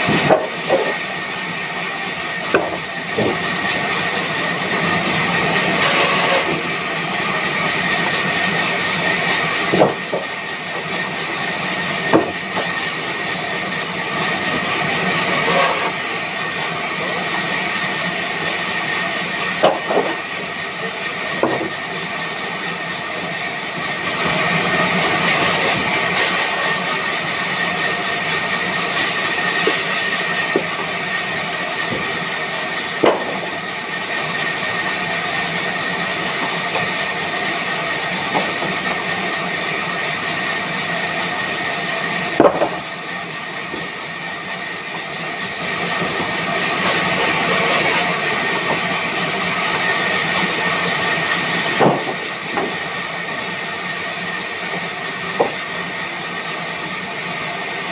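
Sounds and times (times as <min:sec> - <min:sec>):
band saw whining: 0:00.0 - 0:57.9
sharp knocks: 0:51.8 - 0:52.8.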